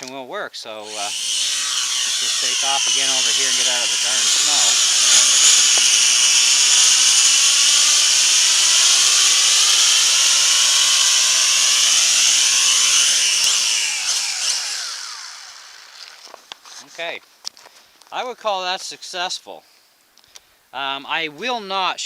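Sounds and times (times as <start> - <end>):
toy quadcopter motors whining: 0.8 - 16.4.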